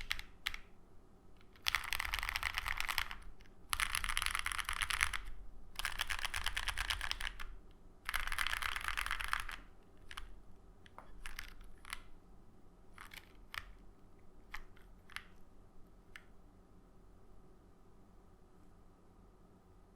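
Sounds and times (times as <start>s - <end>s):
mechanical keyboard typing: 0.0s - 0.7s, 1.4s - 12.2s, 13.0s - 13.8s, 14.4s - 15.4s.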